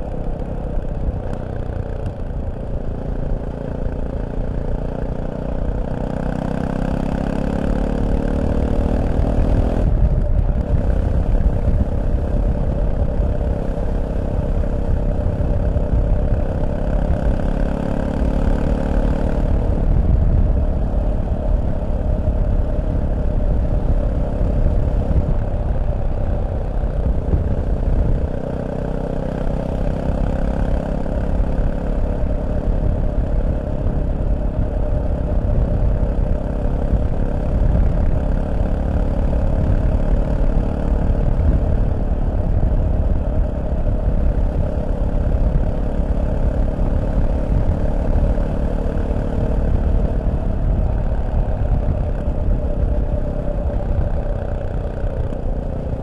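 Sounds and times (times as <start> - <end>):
motorcycle engine running: 0.0 - 56.0.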